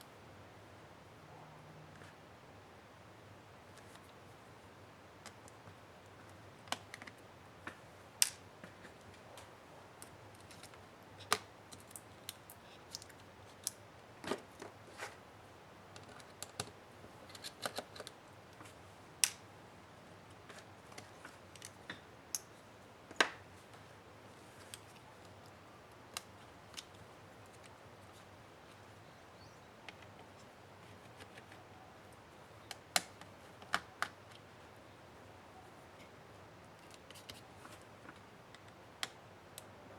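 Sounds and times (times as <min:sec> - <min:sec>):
small clicks and taps of tools: 0:05.2 - 0:13.8, 0:20.5 - 0:22.5.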